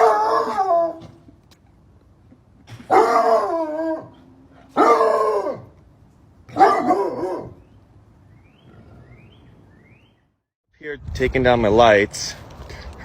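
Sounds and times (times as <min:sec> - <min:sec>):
dog howling barks: 0:00.0 - 0:01.2, 0:02.9 - 0:05.8, 0:06.5 - 0:07.6.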